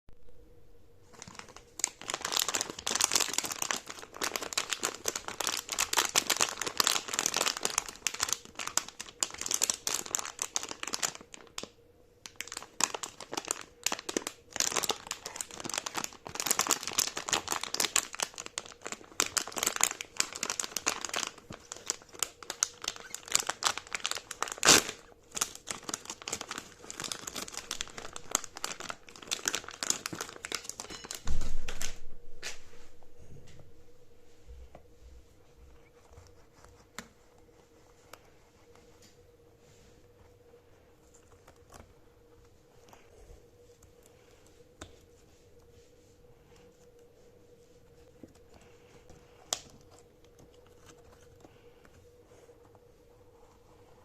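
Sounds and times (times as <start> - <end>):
packaging crinkling: 1.1 - 32.5, 41.0 - 43.1, 48.0 - 52.8.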